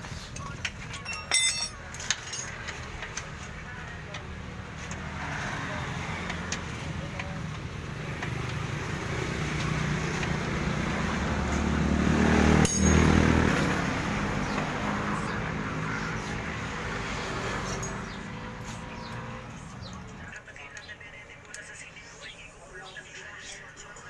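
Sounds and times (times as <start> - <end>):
faint voices: 0.0 - 9.1, 14.6 - 24.0
vehicle engine passing by: 4.4 - 20.3.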